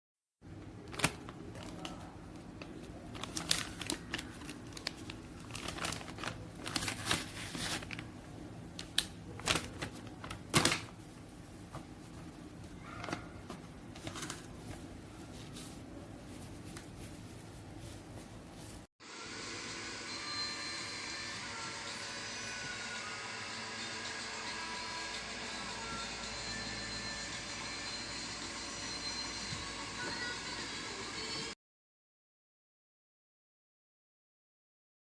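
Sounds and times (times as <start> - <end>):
paper bags rustling and crinkling: 0.7 - 18.9.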